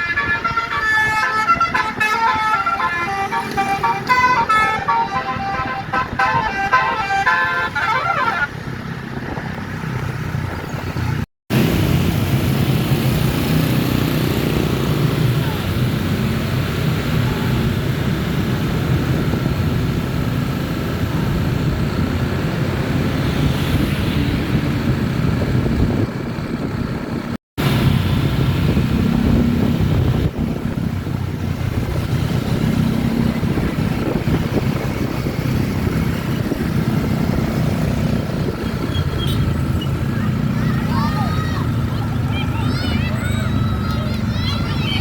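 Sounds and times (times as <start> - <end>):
vehicle engine and road noise: 0.0 - 45.0
wind buffeting microphone: 8.6 - 11.2, 13.2 - 40.5.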